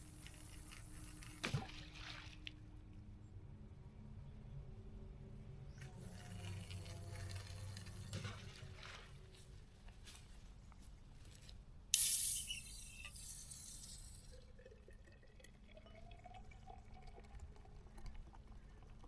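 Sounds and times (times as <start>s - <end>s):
beer can opening with hiss: 11.9s - 14.3s
beer pouring into glass: 12.0s - 19.0s.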